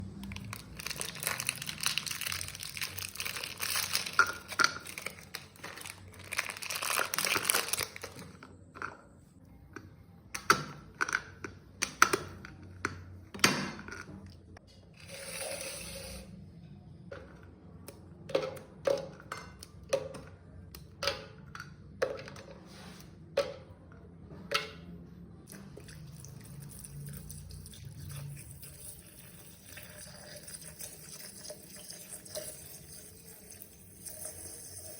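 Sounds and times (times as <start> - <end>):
crinkly plastic packet tearing: 0.2 - 8.3.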